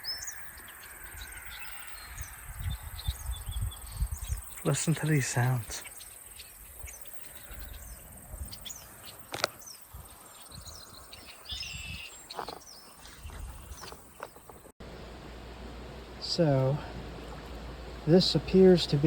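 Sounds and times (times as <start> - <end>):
bird chirps: 0.0 - 14.6
insects trilling: 0.0 - 14.7.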